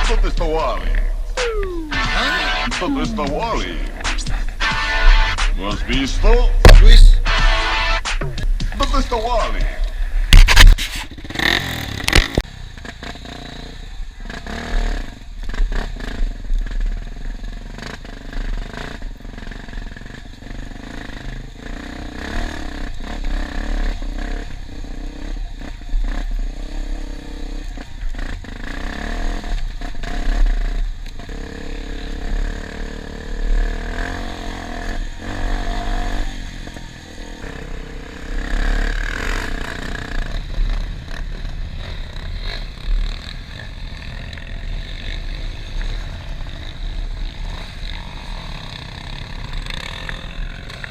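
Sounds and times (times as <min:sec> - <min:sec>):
dirt bike engine revving: 0:00.0 - 0:50.9
loud bangs: 0:01.3 - 0:10.8.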